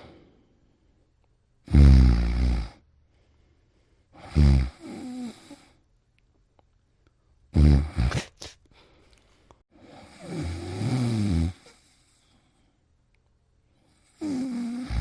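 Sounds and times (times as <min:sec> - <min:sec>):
quiet breathing: 0:00.0 - 0:01.6, 0:02.6 - 0:05.9, 0:08.6 - 0:10.8, 0:11.4 - 0:15.0
person snoring: 0:01.6 - 0:02.8, 0:04.1 - 0:05.8, 0:07.5 - 0:08.4, 0:09.8 - 0:12.2, 0:14.0 - 0:15.0.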